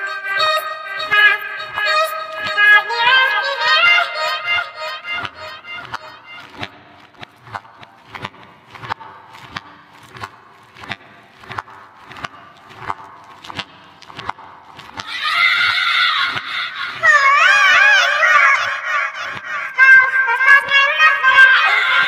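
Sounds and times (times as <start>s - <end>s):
high wavering cry: 15.0s - 20.4s.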